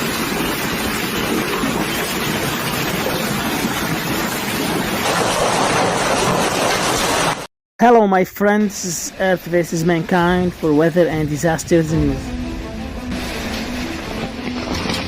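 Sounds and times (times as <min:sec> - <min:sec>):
hail and rain pelting: 0:00.0 - 0:07.4, 0:12.0 - 0:15.0.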